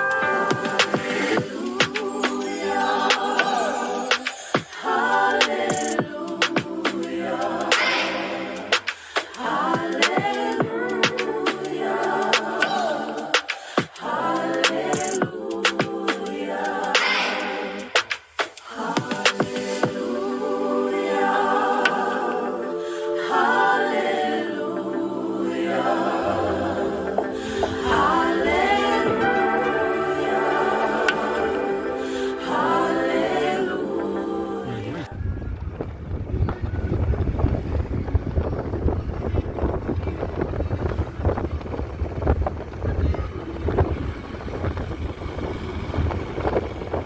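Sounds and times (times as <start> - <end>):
choir singing long chords: 0.0 - 35.2
wind buffeting microphone: 26.1 - 32.0, 34.7 - 47.0.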